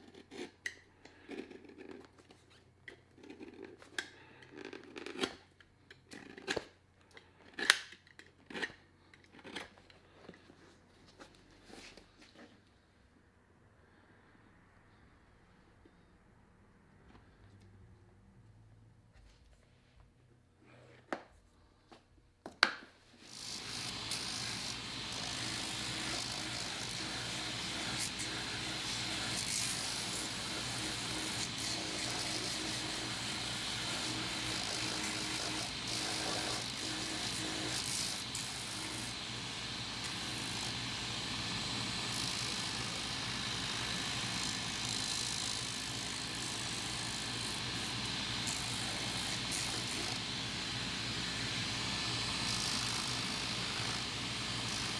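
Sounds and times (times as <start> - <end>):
electric workshop machine humming: 23.2 - 54.9.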